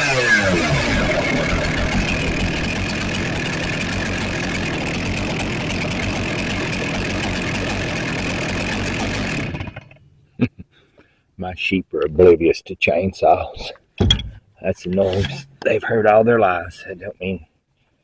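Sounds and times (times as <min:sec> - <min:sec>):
chainsaw idling: 0:00.0 - 0:10.2.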